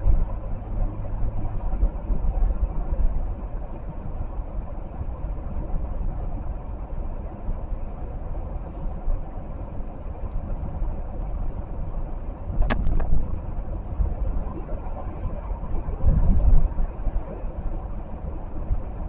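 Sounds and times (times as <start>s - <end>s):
car interior road rumble: 0.0s - 19.0s
sharp click: 12.6s - 13.1s.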